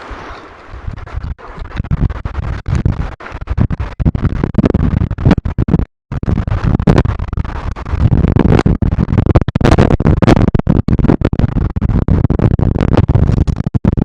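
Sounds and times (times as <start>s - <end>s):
heavy rumbling bumps: 0.0s - 14.0s
scratching and crackling on microphone: 0.0s - 14.0s.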